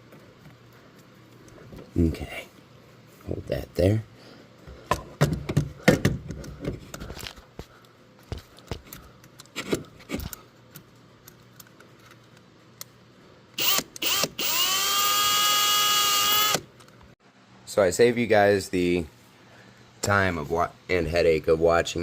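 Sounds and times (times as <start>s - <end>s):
cordless drill whirring: 13.6s - 16.7s.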